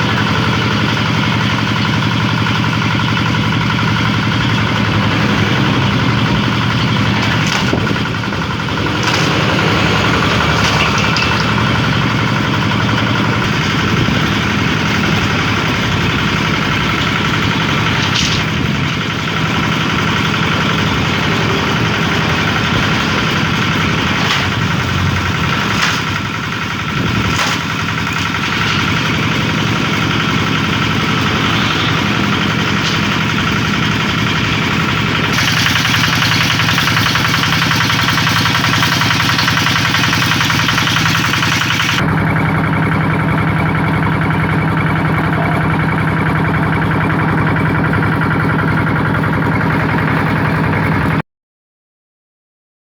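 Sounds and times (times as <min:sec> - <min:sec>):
diesel engine running: 0:00.0 - 0:51.2
bamboo cracking: 0:08.8 - 0:11.1.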